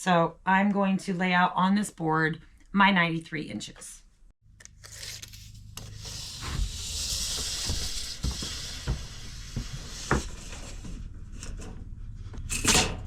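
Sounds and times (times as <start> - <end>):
hissing scrape on wood: 5.8 - 11.0.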